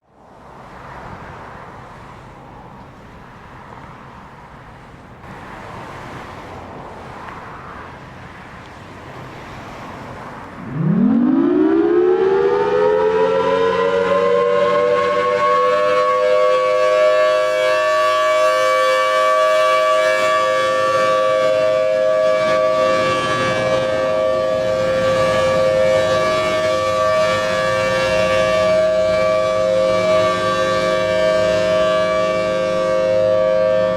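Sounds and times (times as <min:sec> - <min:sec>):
warning siren two-tone wail: 0:10.6 - 0:33.9.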